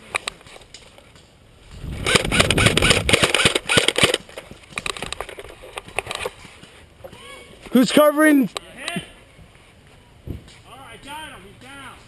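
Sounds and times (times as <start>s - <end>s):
airsoft guns firing: 2.0s - 4.2s.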